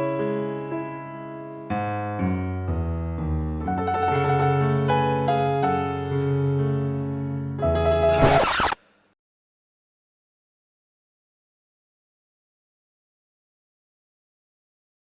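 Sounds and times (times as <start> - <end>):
keyboard piano chords: 0.0 - 8.3.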